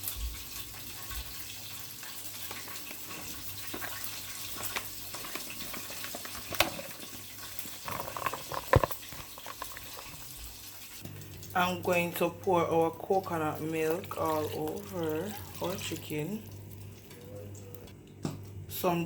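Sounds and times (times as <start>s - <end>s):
chicken sizzling in hot oil: 0.0s - 8.2s, 8.9s - 11.5s.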